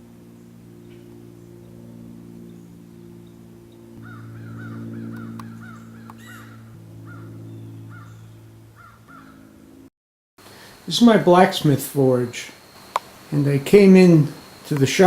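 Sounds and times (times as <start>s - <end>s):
low sustained tones: 0.0s - 9.9s
short sharp animal calls: 4.0s - 7.2s.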